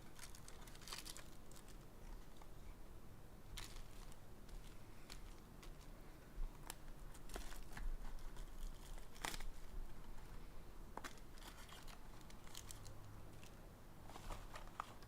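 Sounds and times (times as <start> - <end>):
plastic wrap crinkling and tearing: 0.0 - 2.5, 3.5 - 5.9, 6.5 - 10.2, 11.0 - 13.5.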